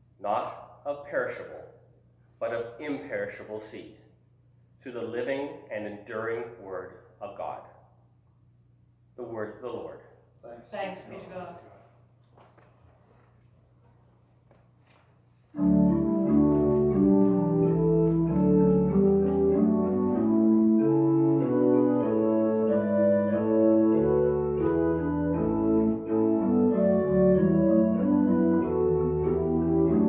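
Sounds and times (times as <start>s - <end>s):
organ playing chords: 15.6s - 30.0s.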